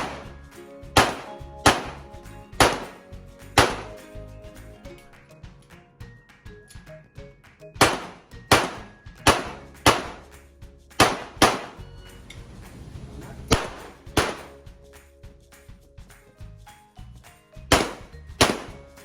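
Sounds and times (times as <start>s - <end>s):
handgun shots: 0.0s - 0.2s, 1.0s - 3.0s, 3.6s - 4.0s, 7.8s - 10.3s, 11.0s - 11.8s, 13.5s - 14.6s, 17.7s - 18.8s.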